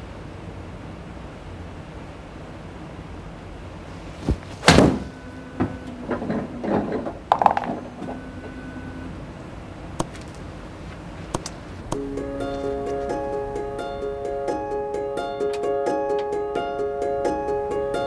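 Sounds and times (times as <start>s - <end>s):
golf club striking ball: 7.3s - 7.8s.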